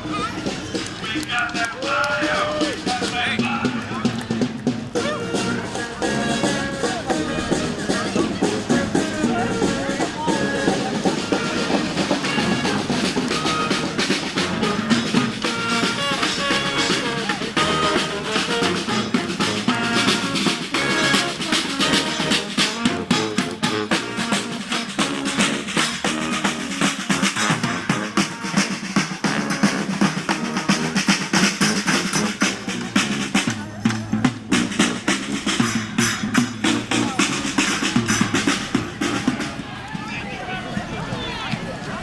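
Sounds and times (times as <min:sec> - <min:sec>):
snare and bass drums: 0:00.0 - 0:42.0.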